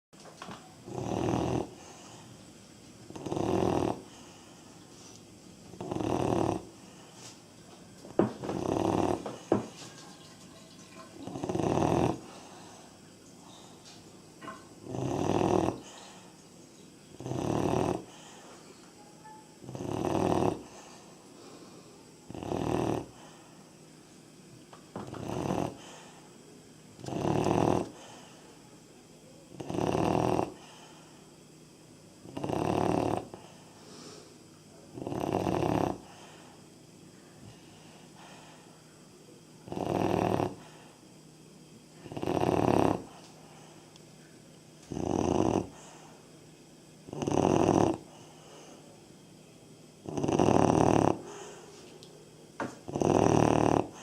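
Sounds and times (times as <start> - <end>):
puppy snoring: 0.7 - 2.4, 3.1 - 7.4, 8.1 - 9.9, 11.2 - 16.3, 17.1 - 23.5, 25.0 - 26.2, 27.0 - 28.4, 29.5 - 31.0, 32.2 - 34.3, 34.9 - 36.6, 39.6 - 41.0, 42.0 - 43.7, 44.8 - 46.2, 47.0 - 48.8, 50.0 - 51.8, 52.8 - 54.0.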